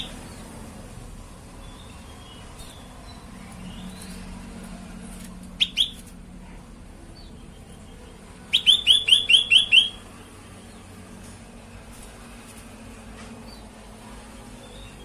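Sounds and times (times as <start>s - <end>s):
bird chirping: 0.0s - 0.7s, 1.5s - 4.4s, 5.6s - 6.1s, 7.1s - 10.9s.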